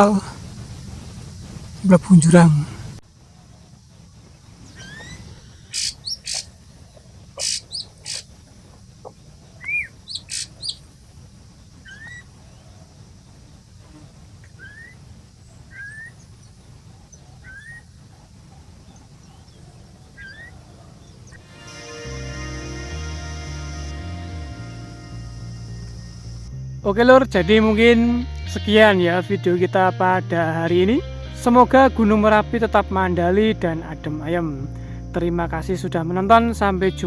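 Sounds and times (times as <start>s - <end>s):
low background noise: 0.0s - 37.0s
loud sharp bird chirps: 4.5s - 6.6s, 7.4s - 8.3s, 9.6s - 10.9s, 11.8s - 12.3s, 14.4s - 15.0s, 15.7s - 16.5s, 17.1s - 17.9s, 20.2s - 21.4s
bird upward-sweeping whistle: 4.6s - 6.5s, 9.6s - 10.8s, 14.6s - 15.0s.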